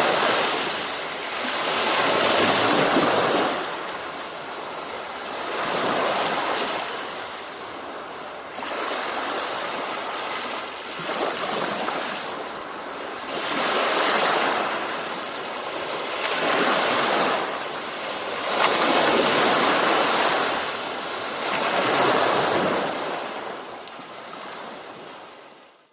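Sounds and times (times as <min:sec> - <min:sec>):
sea waves breaking on a beach: 0:00.0 - 0:25.9.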